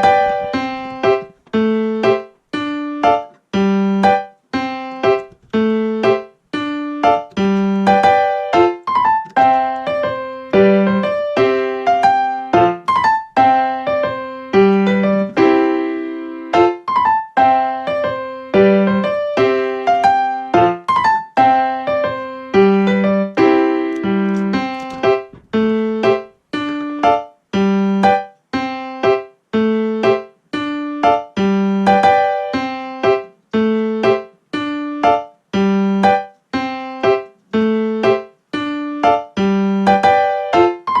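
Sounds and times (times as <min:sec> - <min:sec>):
piano music with beat and bass: 0:00.0 - 0:41.0.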